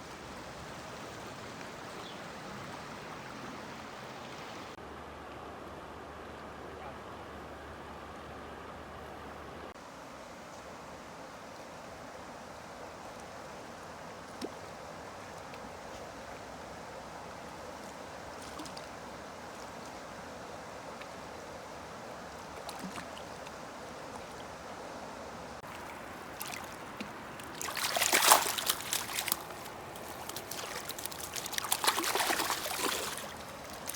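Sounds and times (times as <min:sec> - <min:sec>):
river water rushing: 0:16.6 - 0:33.9.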